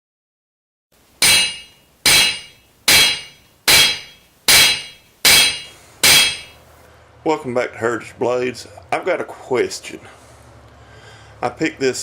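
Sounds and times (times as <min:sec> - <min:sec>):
hammer striking steel on anvil: 0:01.2 - 0:06.6.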